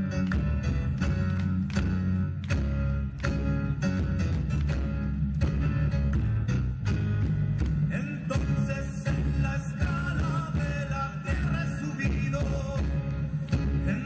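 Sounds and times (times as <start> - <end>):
live band playing: 0.0 - 14.0
person singing: 7.9 - 14.0.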